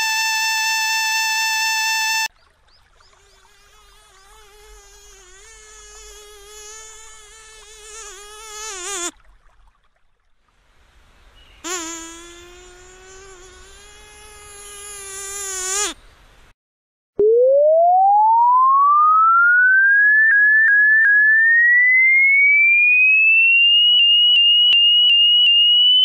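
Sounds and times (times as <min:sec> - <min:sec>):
mosquito buzzing: 0:00.0 - 0:02.3, 0:03.2 - 0:09.1, 0:11.6 - 0:16.0.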